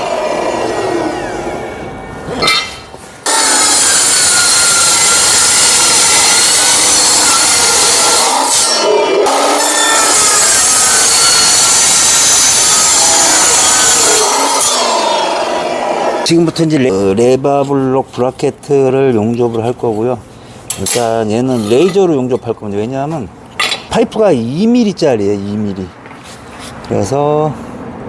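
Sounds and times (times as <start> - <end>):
miter saw cutting steel pipe: 0.0 - 16.4, 20.7 - 22.5.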